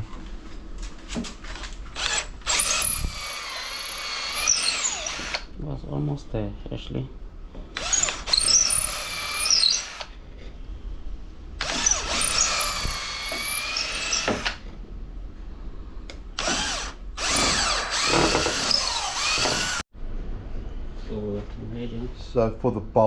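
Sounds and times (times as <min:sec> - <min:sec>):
drill boring into wood: 0:02.0 - 0:05.5, 0:07.8 - 0:10.1, 0:11.6 - 0:14.6, 0:16.4 - 0:19.9.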